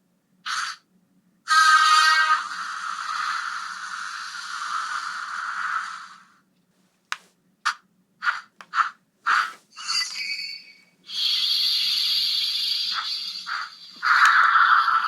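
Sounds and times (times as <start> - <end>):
hissing whoosh from toy speaker: 1.5 - 6.4, 11.1 - 15.0.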